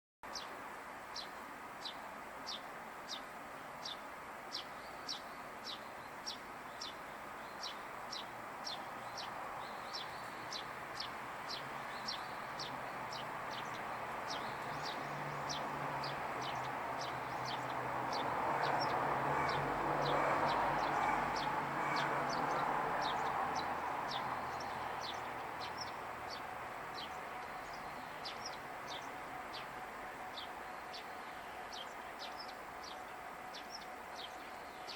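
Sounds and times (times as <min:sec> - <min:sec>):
vehicle passing: 0:08.6 - 0:34.9.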